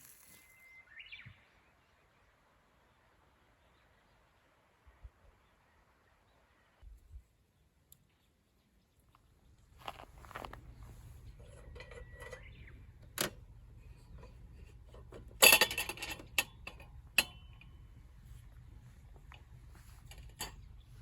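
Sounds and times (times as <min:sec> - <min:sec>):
metal cookware clinking: 0:11.4 - 0:12.6, 0:14.0 - 0:17.7.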